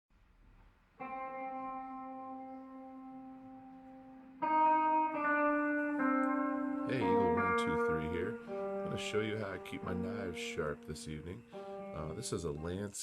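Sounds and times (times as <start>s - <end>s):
held music chords: 1.0s - 13.0s.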